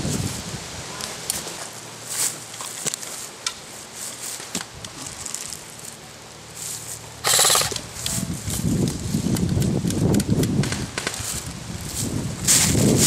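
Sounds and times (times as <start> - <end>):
forest floor crackling: 0.9 - 9.4
airsoft rifle burst: 7.2 - 7.9.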